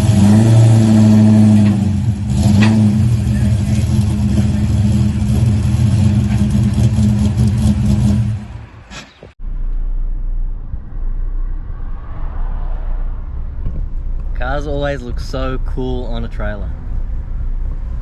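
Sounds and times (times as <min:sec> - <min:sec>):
car engine running loudly: 0:00.0 - 0:08.7
steady low rumble: 0:09.3 - 0:18.0.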